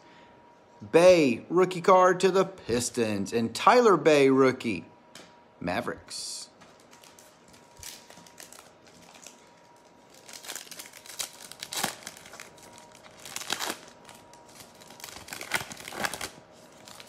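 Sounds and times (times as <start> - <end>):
wrapper crinkling and tearing: 6.7 - 17.0.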